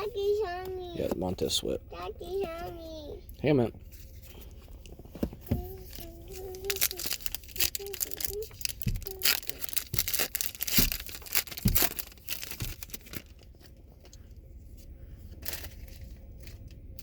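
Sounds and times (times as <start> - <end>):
foil wrapper tearing and crinkling: 5.9 - 13.4.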